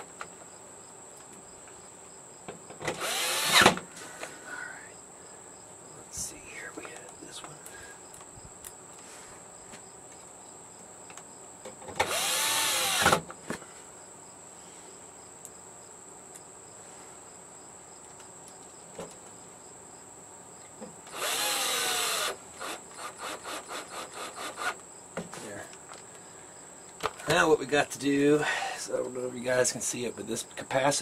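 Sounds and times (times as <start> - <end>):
power screwdriver spinning: 3.0 - 3.8, 12.0 - 13.2, 21.1 - 24.8.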